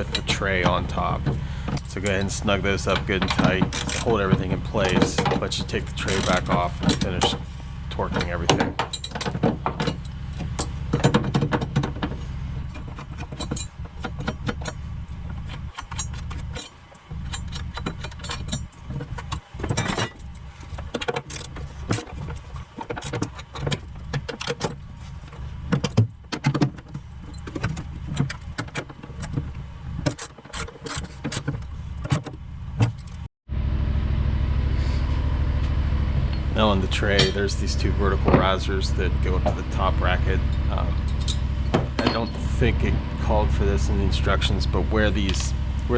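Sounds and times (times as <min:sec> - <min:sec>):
steady low hum: 0:00.0 - 0:09.8, 0:33.6 - 0:45.9.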